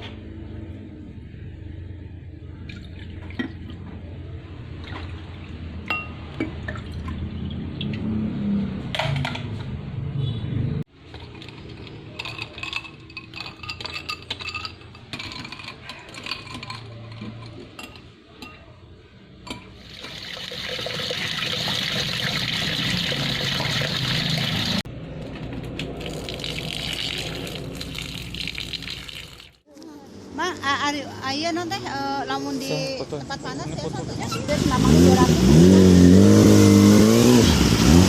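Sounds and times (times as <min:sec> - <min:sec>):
dishware clinking: 0:11.4 - 0:18.8
water running and pouring: 0:19.8 - 0:24.8, 0:25.9 - 0:29.6.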